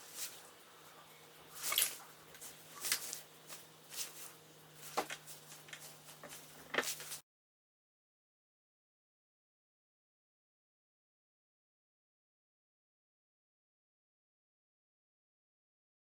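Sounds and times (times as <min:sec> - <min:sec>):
faint hum: 0:00.0 - 0:07.2
scratchy rustles on paper: 0:01.5 - 0:07.2.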